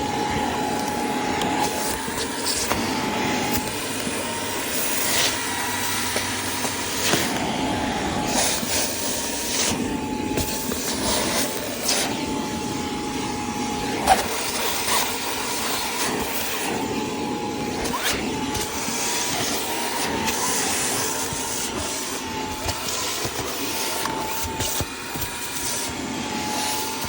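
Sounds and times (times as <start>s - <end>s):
spot cleaner suction motor whine: 0.0s - 27.0s.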